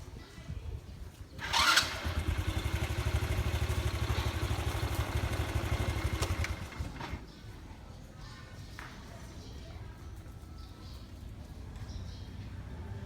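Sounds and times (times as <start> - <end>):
small engine running: 1.4 - 7.2.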